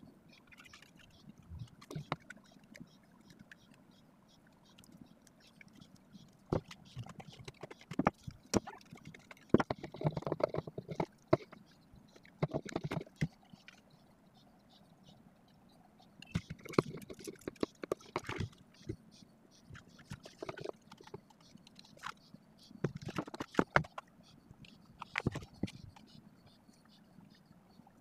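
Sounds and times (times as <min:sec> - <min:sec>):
plastic parts clicking and knocking: 0:06.5 - 0:11.6, 0:12.2 - 0:13.4, 0:16.2 - 0:19.0, 0:19.7 - 0:22.1, 0:22.8 - 0:24.0, 0:25.0 - 0:26.0.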